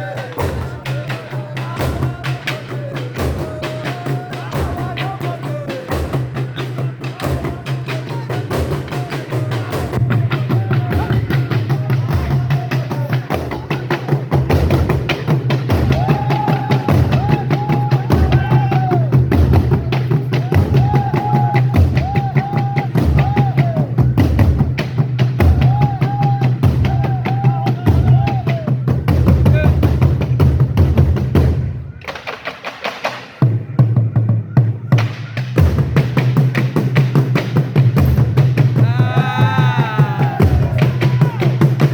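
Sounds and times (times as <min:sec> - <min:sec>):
drum ensemble playing: 0:00.0 - 0:41.9
high calls: 0:38.8 - 0:41.9.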